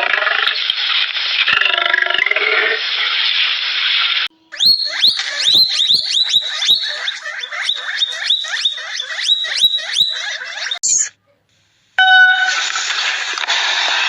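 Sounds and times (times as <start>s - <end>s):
animal high swooping calls: 4.5s - 11.1s.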